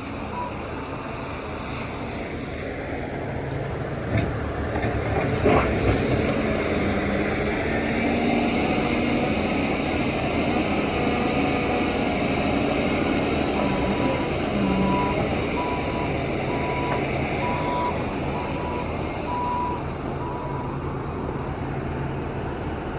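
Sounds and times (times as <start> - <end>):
heavy diesel machinery running: 0.0 - 22.9
reversing alarm beeping: 13.5 - 20.7.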